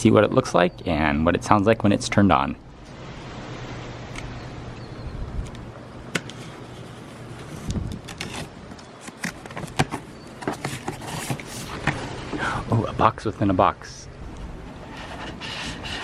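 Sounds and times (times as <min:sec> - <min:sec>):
cardboard box rustling and scraping: 0:06.3 - 0:12.4.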